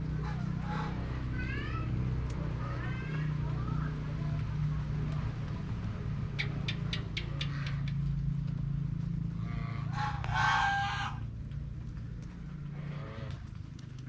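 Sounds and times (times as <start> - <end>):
steady low hum: 0.0 - 14.0
farm animal cry: 0.2 - 1.9, 9.4 - 11.2, 12.7 - 13.5
light drizzling rain: 1.2 - 6.4, 11.2 - 14.0.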